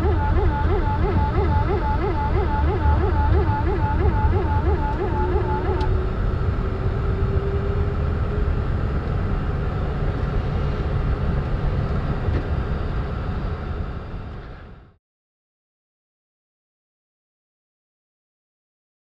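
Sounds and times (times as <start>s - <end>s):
faint steady tone: 0.0s - 6.0s
airplane engines idling and wheels rolling: 0.0s - 15.0s.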